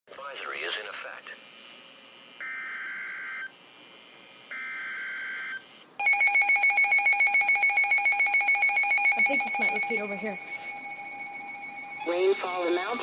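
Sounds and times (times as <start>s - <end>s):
pulsing electronic alert alarm: 2.4s - 3.6s, 4.5s - 13.0s
buzzy digital data tones: 9.1s - 13.0s.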